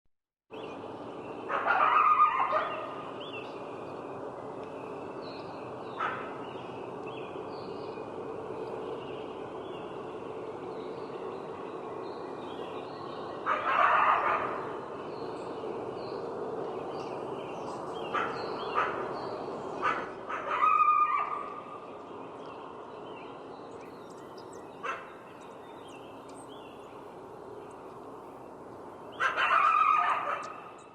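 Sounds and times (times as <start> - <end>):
coyote barking: 1.5 - 3.0, 6.0 - 6.4, 13.5 - 14.7, 18.1 - 19.1, 19.8 - 21.6, 24.8 - 25.2, 29.1 - 30.8.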